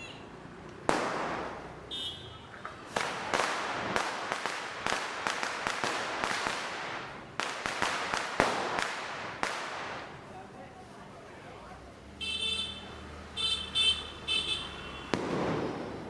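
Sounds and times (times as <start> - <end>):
firecrackers banging: 0.7 - 10.5, 14.3 - 16.0.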